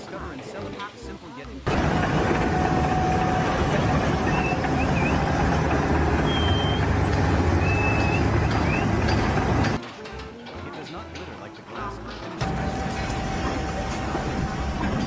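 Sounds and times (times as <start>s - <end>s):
heavy machinery rumbling: 1.6s - 15.0s
high squeaks: 1.7s - 9.8s.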